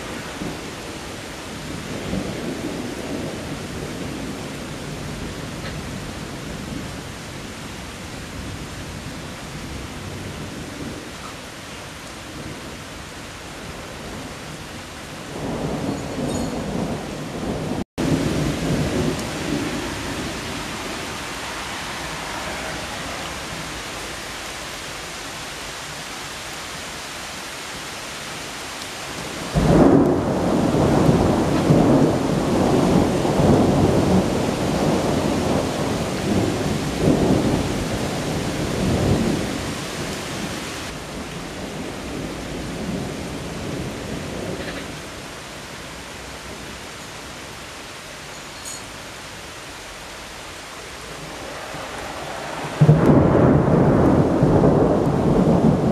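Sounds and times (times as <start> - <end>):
thunder rumbling: 0.0 - 7.1, 13.6 - 24.2, 29.2 - 45.0, 50.9 - 55.9
heavy rain: 0.0 - 55.9
loud thunderclap: 15.3 - 21.1, 29.2 - 40.2, 51.1 - 55.9.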